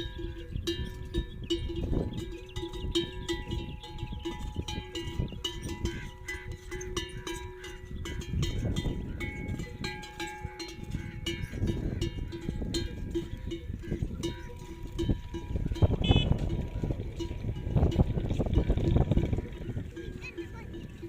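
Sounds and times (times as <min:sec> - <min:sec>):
neck bells clanking: 0:00.0 - 0:21.0.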